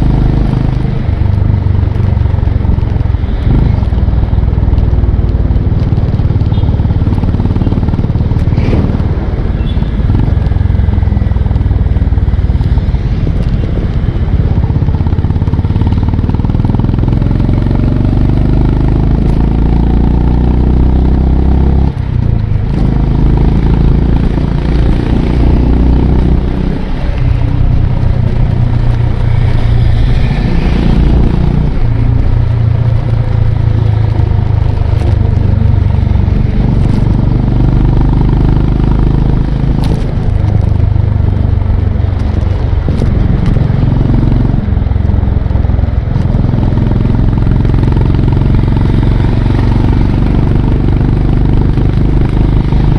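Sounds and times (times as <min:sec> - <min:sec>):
motorcycle engine running: 0:00.0 - 0:52.9.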